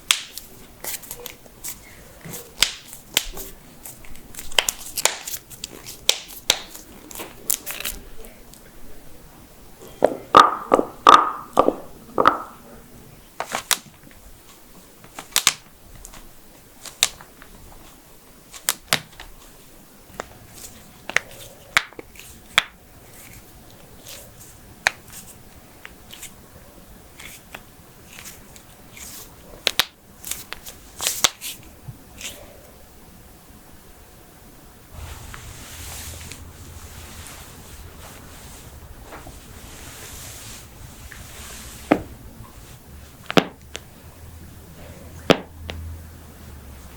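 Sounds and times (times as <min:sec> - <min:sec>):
human joints cracking: 0:09.8 - 0:12.7.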